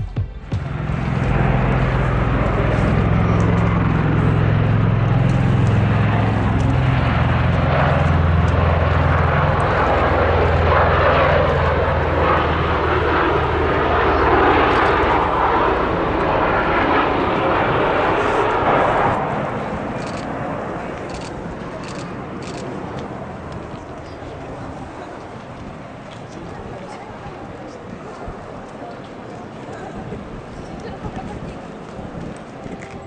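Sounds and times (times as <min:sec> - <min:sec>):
rushing noise: 0:00.0 - 0:07.5
military aircraft engine drone: 0:00.0 - 0:33.0.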